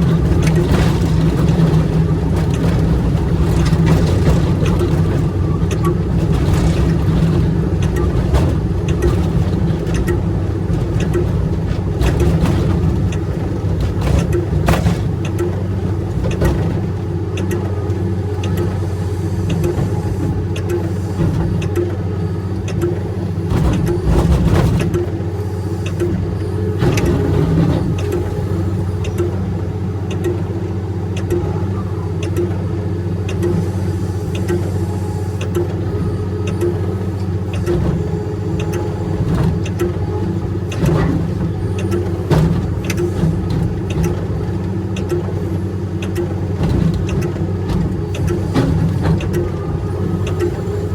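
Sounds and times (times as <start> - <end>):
sharp knocks and clanks: 0.0 - 17.6
excavator diesel engine running: 0.0 - 50.9.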